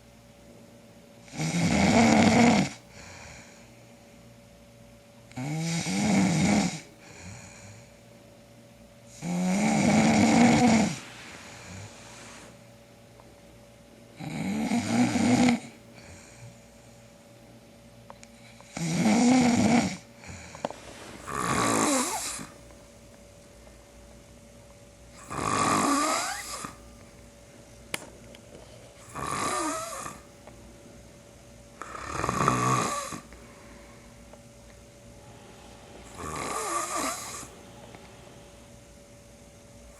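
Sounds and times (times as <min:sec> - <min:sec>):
man snoring loudly: 0:01.3 - 0:02.8, 0:05.4 - 0:07.5, 0:09.2 - 0:11.0, 0:14.2 - 0:15.8, 0:18.7 - 0:20.4, 0:21.2 - 0:22.6, 0:25.2 - 0:26.8, 0:29.0 - 0:30.3, 0:31.8 - 0:33.3, 0:36.0 - 0:37.5
quiet breath: 0:02.8 - 0:04.3, 0:06.9 - 0:08.1, 0:10.6 - 0:12.8, 0:15.9 - 0:17.2, 0:20.0 - 0:24.0, 0:33.1 - 0:39.2.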